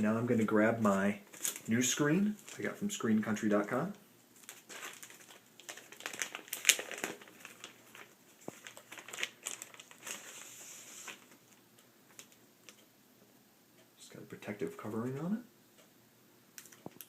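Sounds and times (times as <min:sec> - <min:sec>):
plastic packaging crinkling: 0:00.4 - 0:12.8.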